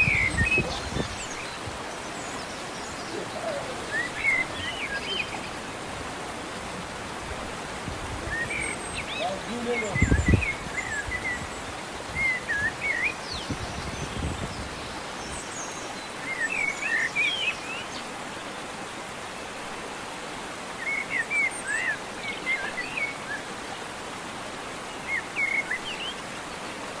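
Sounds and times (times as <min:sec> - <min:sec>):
songbird warbling: 0:00.0 - 0:07.1, 0:08.0 - 0:14.1
steady background hiss: 0:00.0 - 0:27.0.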